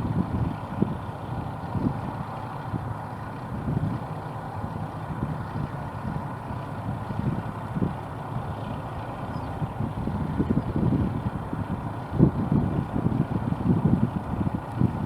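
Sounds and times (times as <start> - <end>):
harvest machinery engine hum: 0.0 - 15.0
wind buffeting microphone: 0.0 - 15.0.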